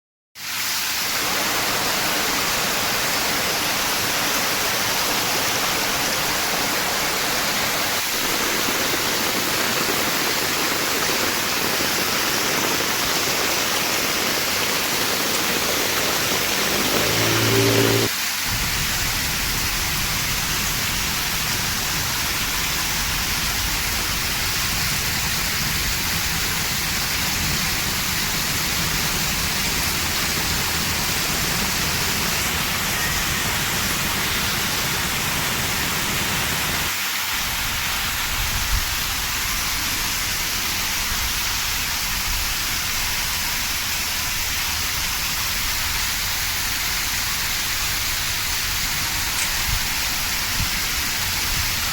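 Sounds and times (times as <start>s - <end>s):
heavy rain falling: 0.5s - 51.9s
low rumble: 17.0s - 36.9s.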